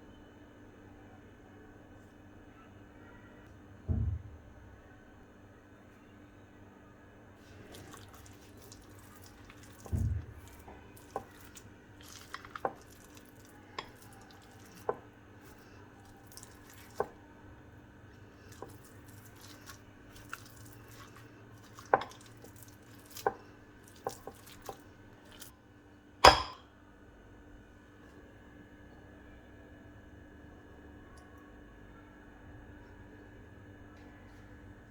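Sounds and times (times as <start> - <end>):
utensils tapping and clinking: 26.2 - 26.6.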